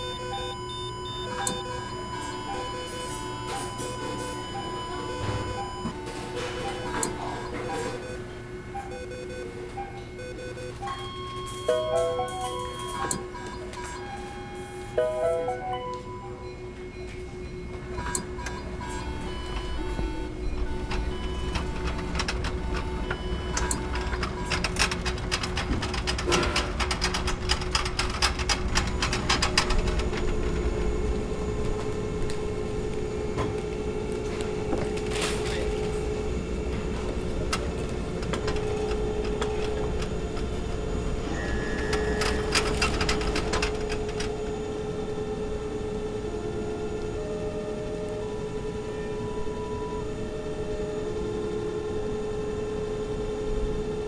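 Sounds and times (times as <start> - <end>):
short electronic beeps: 0.0 - 5.9
electrical hum: 0.0 - 54.0
mechanical clicking and rattling: 20.7 - 30.8, 41.7 - 44.4.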